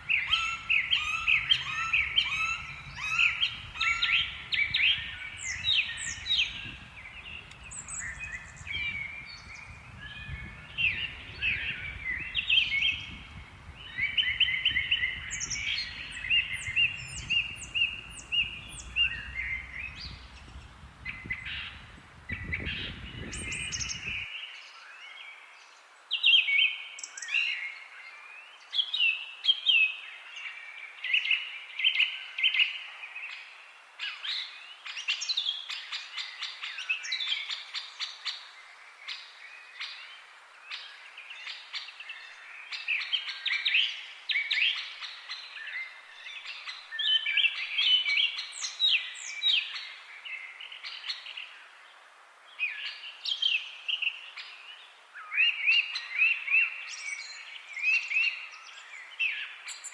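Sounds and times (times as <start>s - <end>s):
songbirds chorus: 0.0s - 25.9s
faint low rumble: 0.1s - 24.2s.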